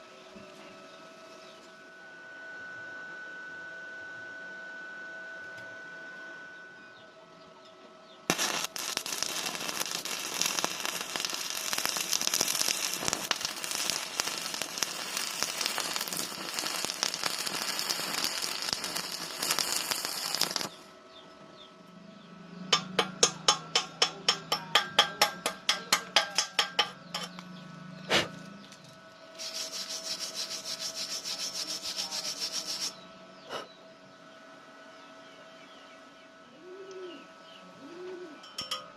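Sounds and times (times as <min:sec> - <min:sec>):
welding arc crackling: 0:08.3 - 0:20.9, 0:22.8 - 0:27.4, 0:29.4 - 0:33.0.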